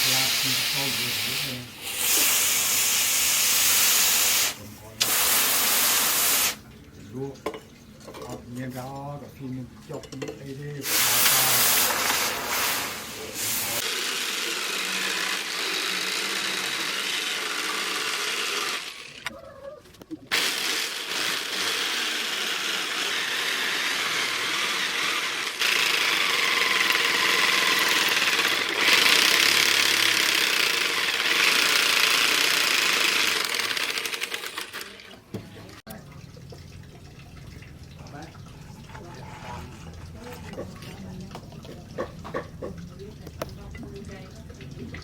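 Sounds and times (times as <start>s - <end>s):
angle grinder on steel: 10.8s - 19.3s, 20.3s - 35.1s.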